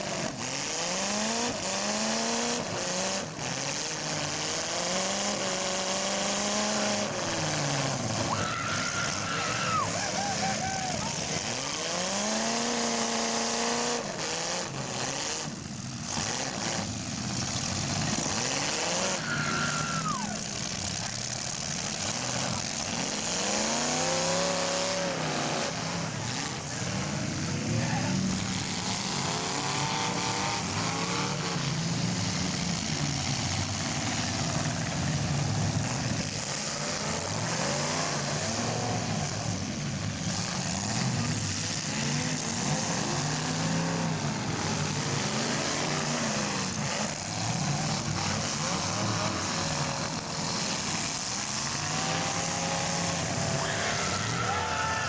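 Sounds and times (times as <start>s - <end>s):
car engines revving hard: 0.0s - 55.0s
arena noise: 7.0s - 11.9s, 18.5s - 33.8s, 40.9s - 55.0s.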